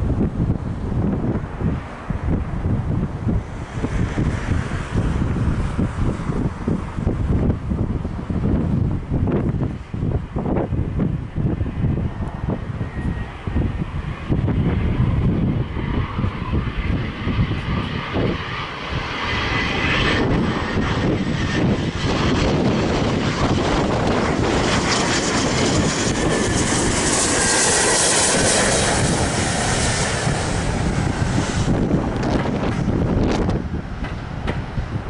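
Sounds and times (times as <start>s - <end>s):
wind buffeting microphone: 0.0s - 35.0s
jet engines hissing: 12.1s - 35.0s.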